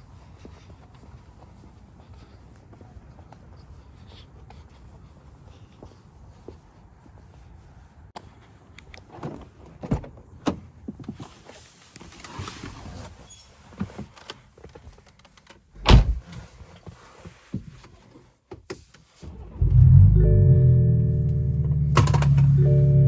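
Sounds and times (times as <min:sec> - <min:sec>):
heavy thump: 0:15.8 - 0:16.4.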